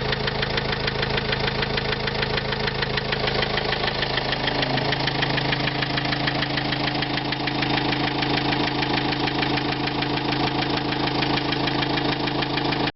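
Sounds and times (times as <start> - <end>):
diesel engine idling: 0.0 - 12.9
engine knock: 0.0 - 12.9.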